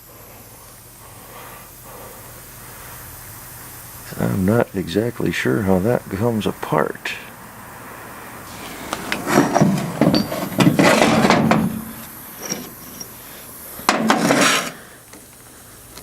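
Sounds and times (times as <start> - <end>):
metal parts scraping and knocking: 9.1 - 13.2, 13.9 - 14.8.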